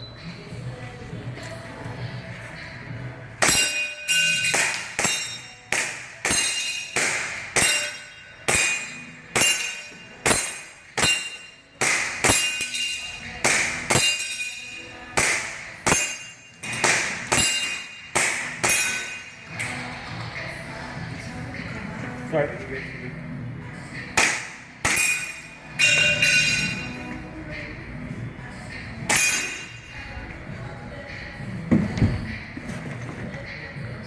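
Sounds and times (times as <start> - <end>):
metallic ring of steel target: 3.4 - 20.1, 24.1 - 27.7, 29.0 - 30.4.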